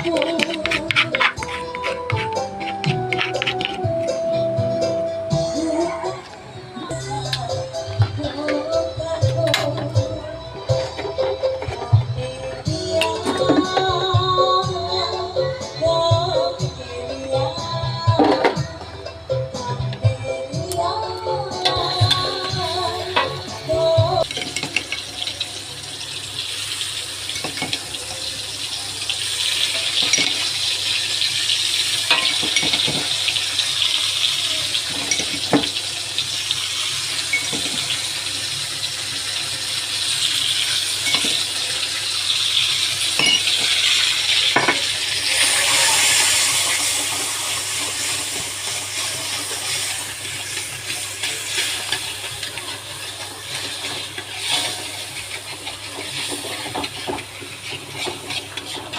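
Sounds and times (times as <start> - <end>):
paste sizzling in a pan: 0.0 - 4.2, 21.8 - 58.9
utensil stirring against pan: 0.0 - 4.3, 29.2 - 58.9.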